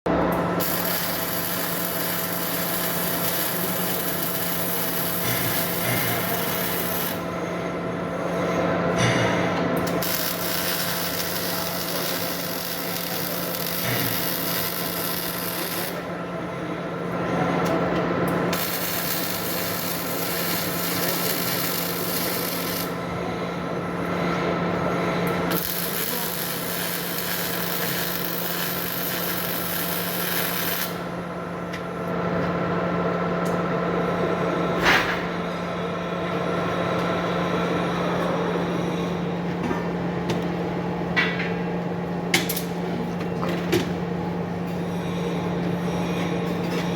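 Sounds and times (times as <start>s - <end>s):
welding equipment hum: 0.1s - 38.2s
welding arc crackling and hissing: 0.6s - 7.2s, 9.9s - 16.0s, 18.5s - 23.0s, 25.5s - 31.0s.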